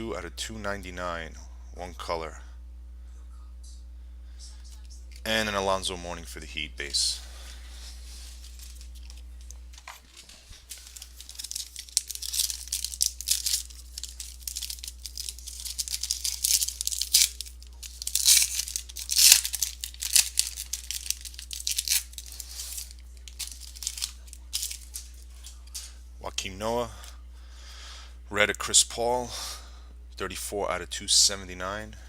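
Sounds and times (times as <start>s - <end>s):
wrapper tearing and crinkling: 10.0s - 25.9s.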